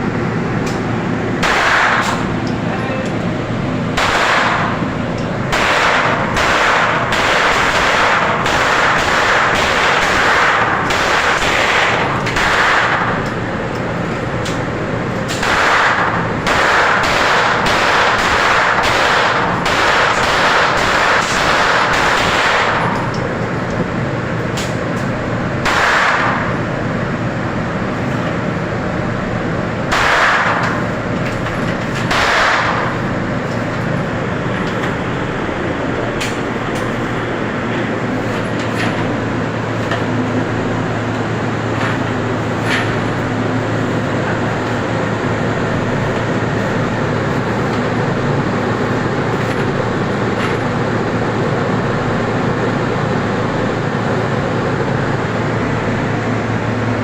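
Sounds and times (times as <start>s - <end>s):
steady low hum: 0.0s - 57.0s
gunshots: 1.4s - 2.3s, 4.0s - 4.8s, 5.5s - 13.2s, 15.4s - 22.8s, 25.6s - 26.5s, 29.9s - 30.8s, 32.1s - 33.0s.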